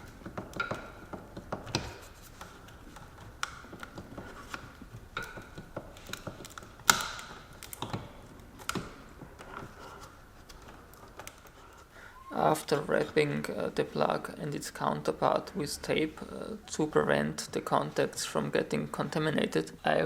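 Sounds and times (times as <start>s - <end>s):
hand tools clicking and tapping: 0.0s - 11.9s.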